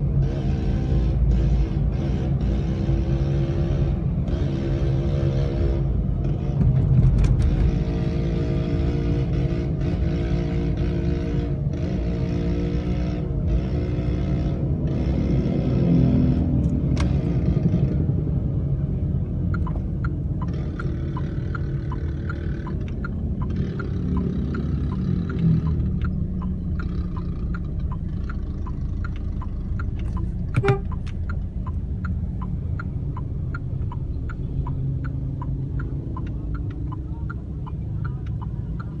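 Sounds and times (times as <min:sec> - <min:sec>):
traffic: 0:00.0 - 0:39.0
light regular ticking: 0:19.4 - 0:39.0.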